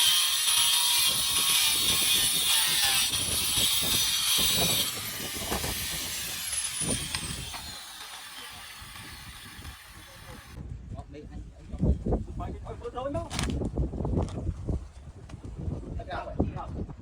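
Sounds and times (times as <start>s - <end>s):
power tool hissing: 0.0s - 10.6s.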